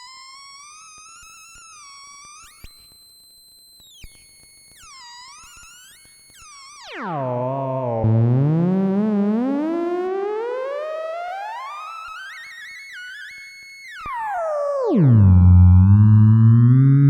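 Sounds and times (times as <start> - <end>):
theremin gliding electronic tone: 14.0 - 17.0.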